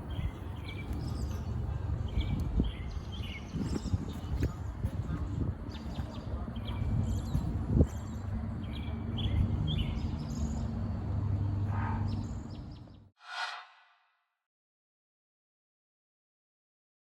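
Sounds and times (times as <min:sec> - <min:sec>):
birds chirping: 0:00.0 - 0:13.0
short burst of noise: 0:13.2 - 0:14.0.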